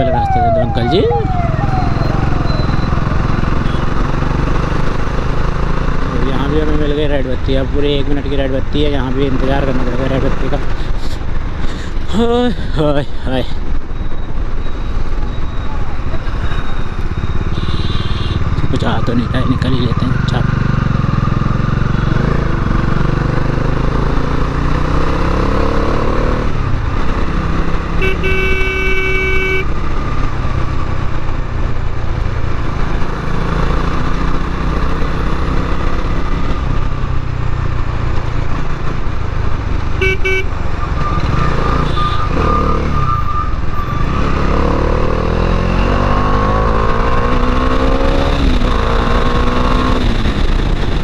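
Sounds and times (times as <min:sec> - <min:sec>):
motorcycle engine revving: 0:00.0 - 0:06.9, 0:16.3 - 0:31.2, 0:32.4 - 0:43.2, 0:44.0 - 0:51.0
vehicle horn: 0:03.6 - 0:04.0, 0:17.5 - 0:18.5, 0:28.0 - 0:29.8, 0:40.0 - 0:43.1.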